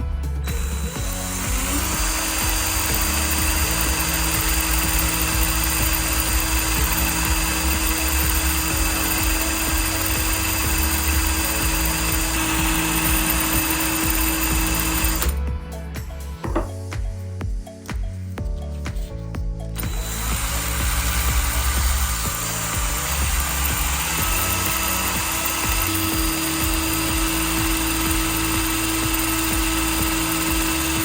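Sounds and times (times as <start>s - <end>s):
small electric power tool spinning: 0.5s - 15.4s, 19.8s - 31.0s.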